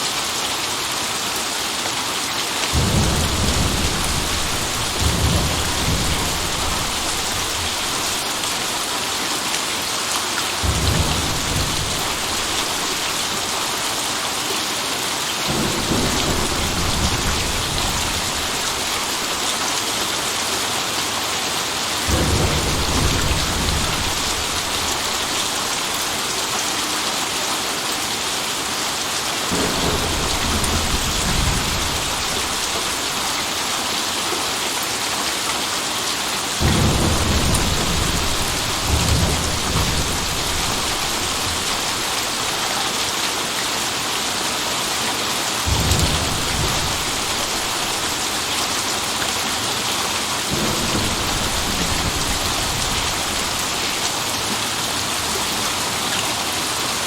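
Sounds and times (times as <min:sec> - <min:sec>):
heavy rain: 0:00.0 - 0:57.0
rolling thunder: 0:02.7 - 0:08.9, 0:10.6 - 0:13.8, 0:15.5 - 0:19.4, 0:22.1 - 0:26.0, 0:29.5 - 0:33.5, 0:36.6 - 0:42.6, 0:45.7 - 0:48.8, 0:50.4 - 0:54.4.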